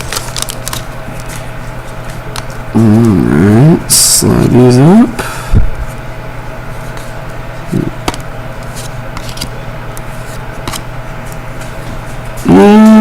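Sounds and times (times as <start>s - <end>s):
low background hum: 0.0s - 13.0s
trading cards sliding through hands: 8.6s - 12.5s.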